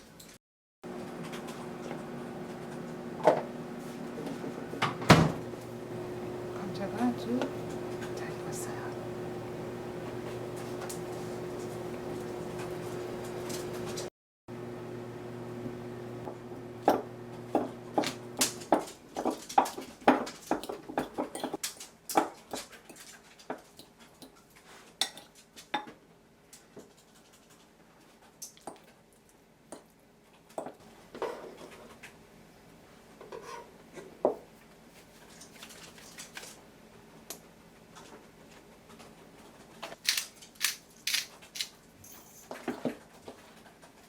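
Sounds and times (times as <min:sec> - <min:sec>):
low electrical hum: 0:00.9 - 0:19.1.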